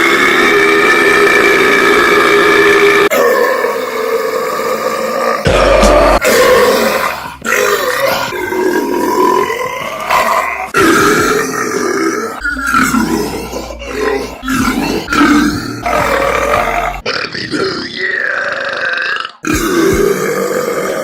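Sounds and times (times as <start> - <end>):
person burping: 4.2 - 9.6, 10.2 - 21.0.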